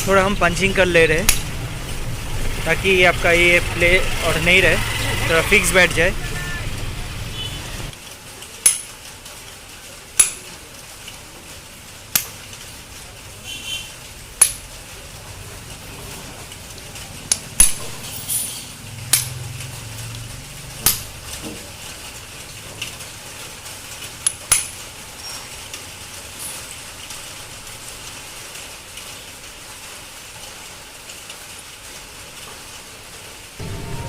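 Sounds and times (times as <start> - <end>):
hammer striking metal punch: 8.6 - 8.9, 10.2 - 10.4, 14.4 - 14.6, 17.6 - 18.0, 19.1 - 19.4, 20.8 - 21.2, 24.3 - 24.7.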